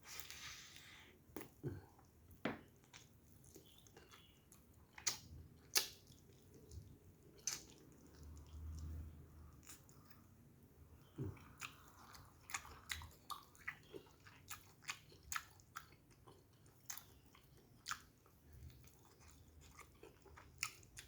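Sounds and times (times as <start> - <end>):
wet chewing and lip smacks: 2.8 - 9.0, 11.1 - 21.0.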